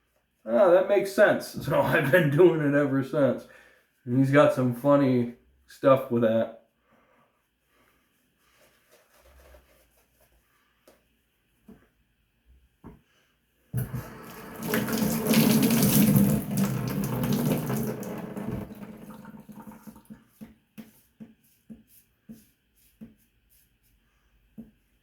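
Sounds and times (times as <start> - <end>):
tap water running into sink: 13.8 - 20.5.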